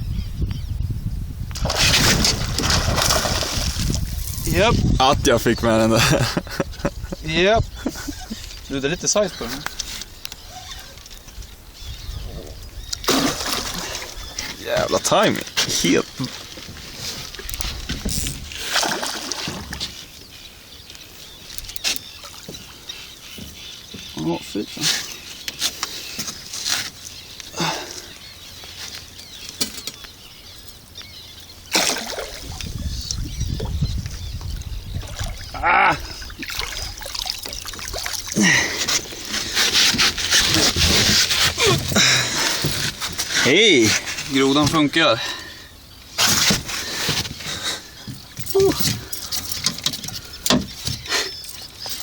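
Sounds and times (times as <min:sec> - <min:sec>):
fish splashing in water: 0:01.6 - 0:04.4, 0:13.0 - 0:14.4, 0:18.6 - 0:19.8, 0:31.7 - 0:33.7, 0:35.0 - 0:39.4
water splashing around boat: 0:01.6 - 0:04.7, 0:13.0 - 0:20.4, 0:21.6 - 0:25.8, 0:31.6 - 0:45.0.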